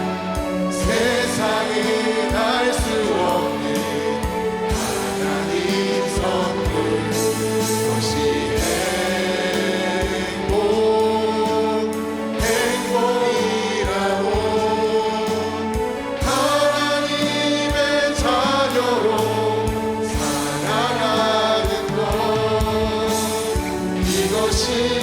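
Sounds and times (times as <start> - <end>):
drum beat: 0.0 - 11.1, 11.9 - 14.8, 15.8 - 25.0
voices singing in chorus: 0.0 - 25.0.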